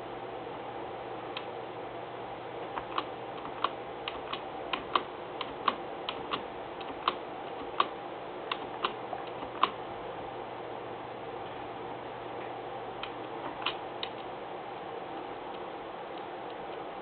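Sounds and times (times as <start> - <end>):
steady background hiss: 0.0 - 17.0
keyboard and mouse clicks: 2.7 - 7.9, 8.5 - 9.8, 13.0 - 14.3.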